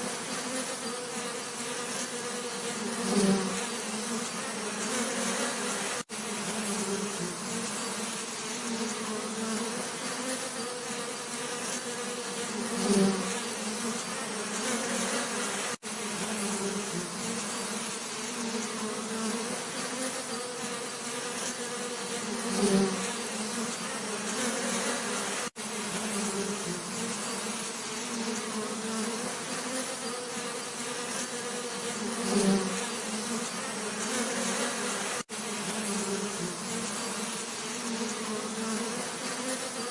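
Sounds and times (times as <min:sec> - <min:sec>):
bees buzzing: 0:00.0 - 0:39.9.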